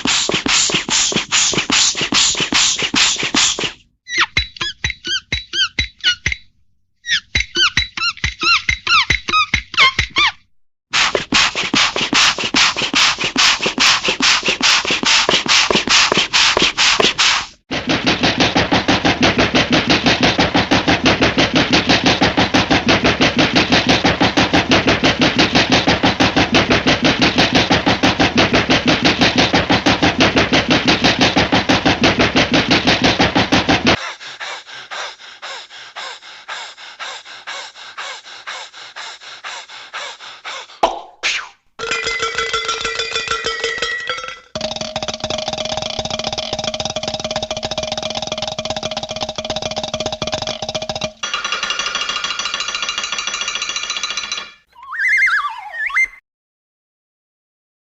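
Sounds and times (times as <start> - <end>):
rapid even clattering: 11.1 - 34.0, 41.8 - 54.7.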